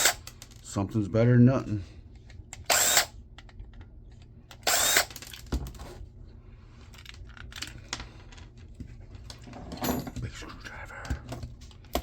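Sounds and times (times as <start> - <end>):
cordless drill spinning: 2.7 - 3.1, 4.6 - 5.2.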